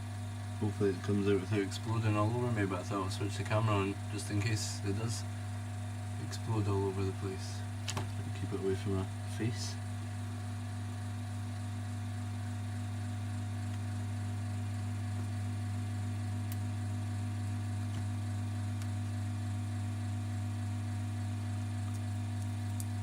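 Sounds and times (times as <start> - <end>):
low electrical hum: 0.0 - 23.0
faint small clicks: 21.8 - 23.0.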